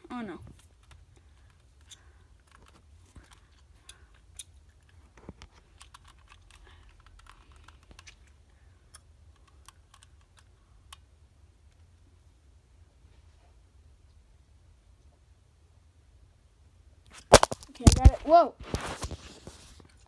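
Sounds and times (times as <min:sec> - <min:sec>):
small hard objects clicking: 0:17.2 - 0:18.2.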